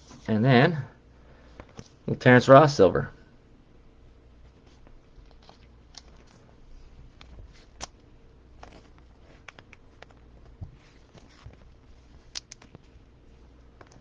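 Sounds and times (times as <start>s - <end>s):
trading cards clicking and rustling: 8.6s - 13.0s.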